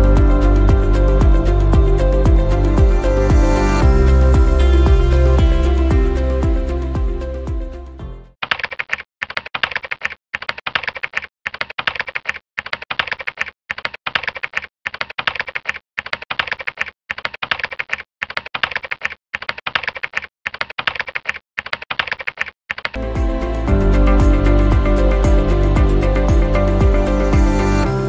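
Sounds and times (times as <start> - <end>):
rapid keyboard typing: 8.4 - 23.4.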